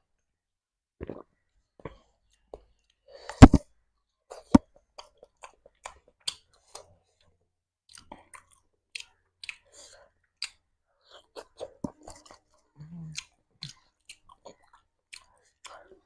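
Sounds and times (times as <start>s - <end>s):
person chewing food: 4.3s - 16.0s.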